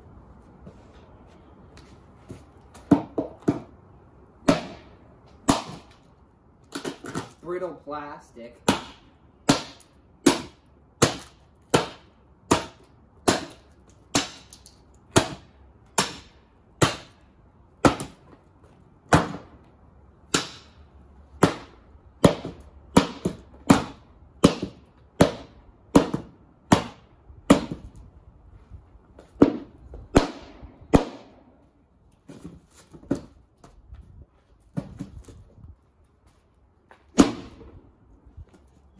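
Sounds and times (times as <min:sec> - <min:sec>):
plastic casing smashed by blows: 0:04.4 - 0:06.0, 0:37.1 - 0:37.7.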